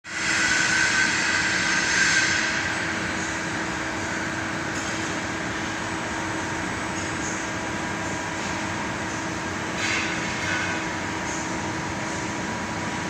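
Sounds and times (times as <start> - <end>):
machine hum with hissing whine: 0.1 - 13.0.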